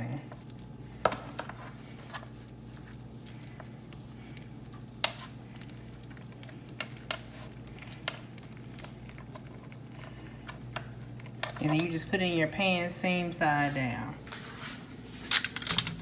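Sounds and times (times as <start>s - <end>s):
soft food squishing: 0.0s - 12.2s
steady low hum: 0.0s - 16.0s.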